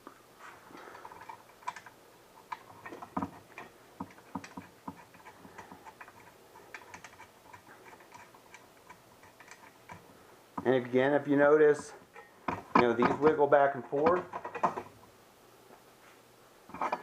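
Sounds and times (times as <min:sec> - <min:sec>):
metallic clicks and taps: 0:01.2 - 0:10.0.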